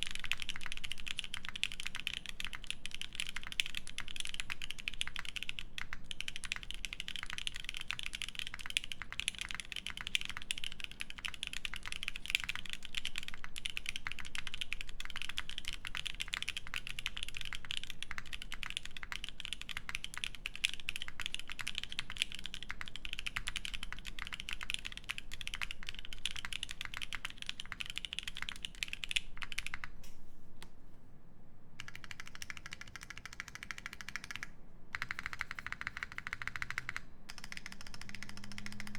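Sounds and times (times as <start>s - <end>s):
mechanical keyboard typing: 0.0s - 30.1s, 31.8s - 38.9s.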